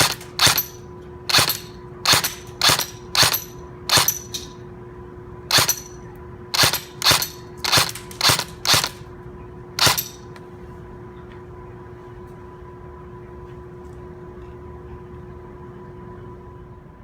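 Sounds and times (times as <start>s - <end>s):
airsoft gun shots: 1.3s - 4.2s, 6.6s - 9.0s.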